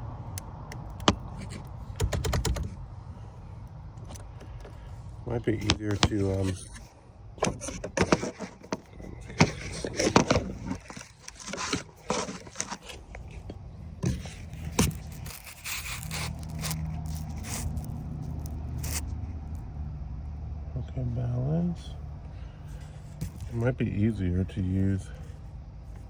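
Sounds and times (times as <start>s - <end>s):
low steady hum: 0.0s - 26.0s
lock picks clicking and scraping: 0.4s - 2.8s, 3.9s - 6.8s, 7.4s - 19.0s.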